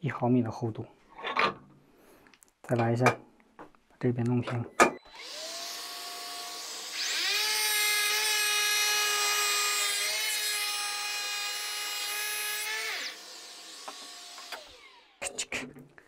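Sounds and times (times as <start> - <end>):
electric planer motor whining: 5.1 - 15.2
planer cutting into board: 5.1 - 15.2.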